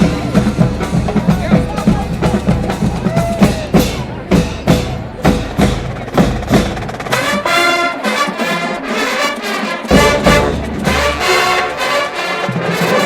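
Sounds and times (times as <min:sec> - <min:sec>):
marching drumline beating: 0:00.0 - 0:13.0
brass section holding chords: 0:07.1 - 0:13.0.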